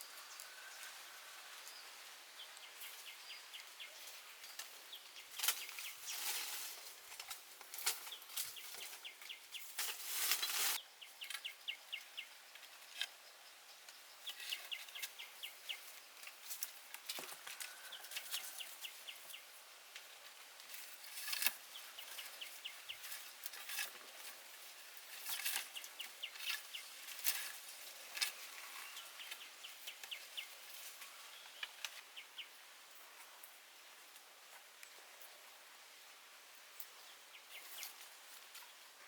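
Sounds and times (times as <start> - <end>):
bird chirping: 10.4 - 16.3, 28.3 - 32.6.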